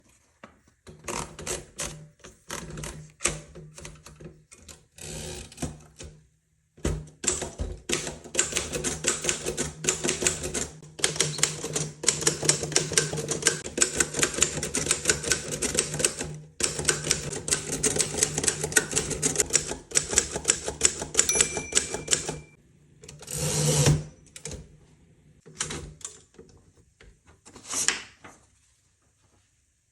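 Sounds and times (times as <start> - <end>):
typewriter carriage return: 7.0 - 22.5
typewriter keys clacking: 8.0 - 22.5
typewriter bell ring: 21.2 - 22.6.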